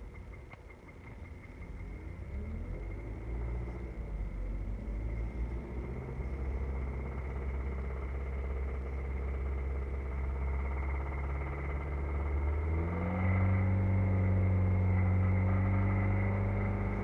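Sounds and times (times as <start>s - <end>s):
car engine idling: 0.0s - 17.0s
fast ticking-knocking in engine: 0.0s - 17.0s.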